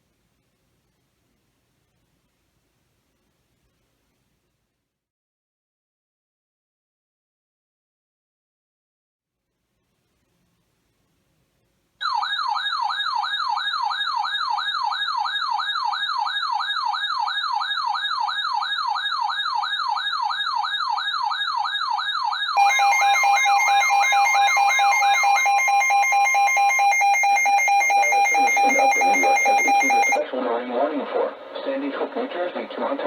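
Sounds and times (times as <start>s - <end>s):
rapid pulsed beeping: 22.6s - 30.2s
warbling siren-like tone: 22.6s - 30.2s.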